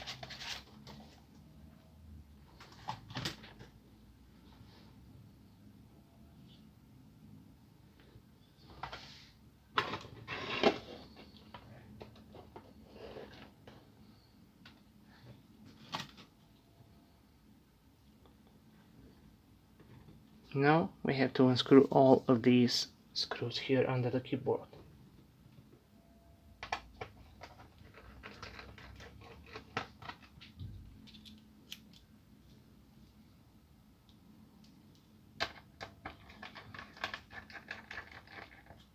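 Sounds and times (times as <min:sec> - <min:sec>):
plastic keyboard clicks and scraping: 0:26.6 - 0:31.9, 0:35.4 - 0:38.9.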